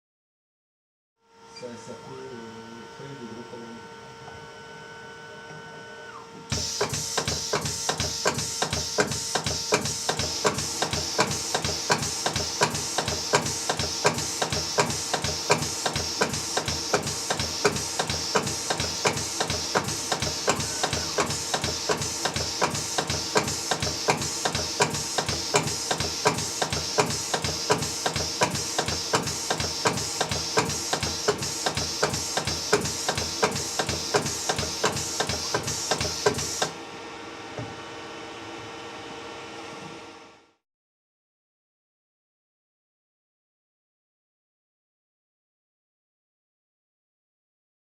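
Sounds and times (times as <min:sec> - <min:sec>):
grinder knocking rhythmically: 0:06.5 - 0:36.7.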